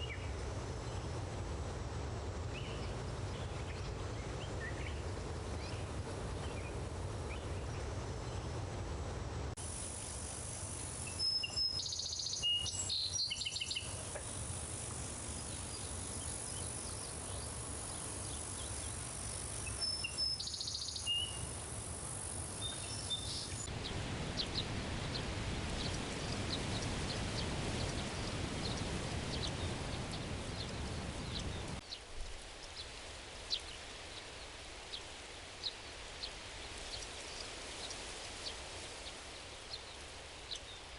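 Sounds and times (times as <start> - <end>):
low background rumble: 0.0 - 31.9
insect drone: 0.0 - 40.9
bird calls: 11.0 - 14.4, 15.2 - 21.6, 22.6 - 32.0.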